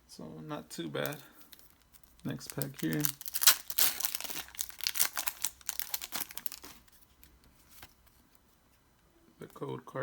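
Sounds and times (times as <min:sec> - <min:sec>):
foil wrapper crinkling: 0:01.0 - 0:07.0.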